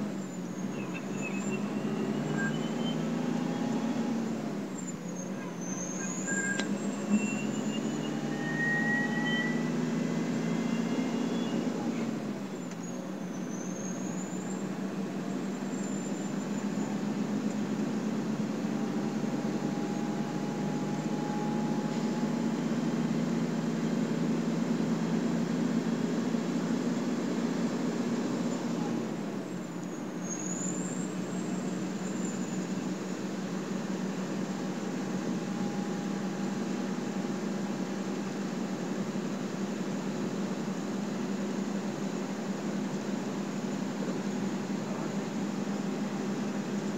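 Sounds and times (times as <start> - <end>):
diesel truck engine drone: 0.0 - 46.9
turbo whistle: 0.7 - 4.1, 5.6 - 11.8.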